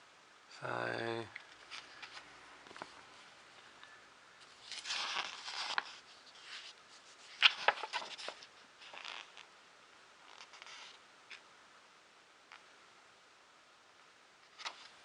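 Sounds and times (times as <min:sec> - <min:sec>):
magazine pages rustling: 0:01.6 - 0:03.3, 0:04.4 - 0:09.4, 0:14.5 - 0:15.0.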